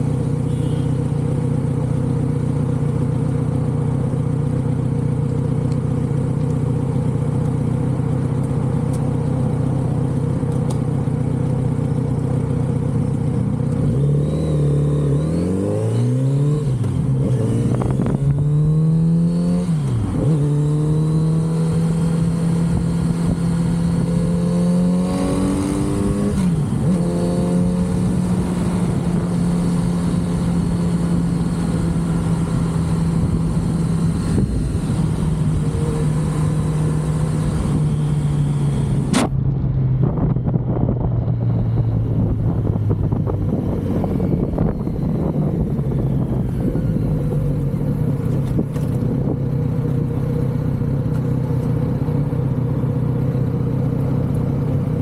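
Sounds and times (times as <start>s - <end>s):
motorcycle engine revving: 13.5s - 52.6s.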